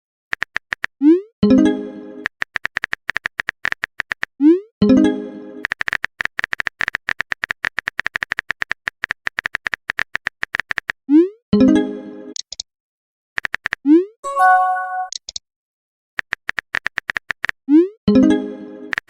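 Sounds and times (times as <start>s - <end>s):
phone keyboard typing clicks: 2.3s - 4.3s, 5.6s - 11.0s, 13.4s - 13.8s, 16.2s - 17.6s
message sent chime: 14.2s - 15.2s.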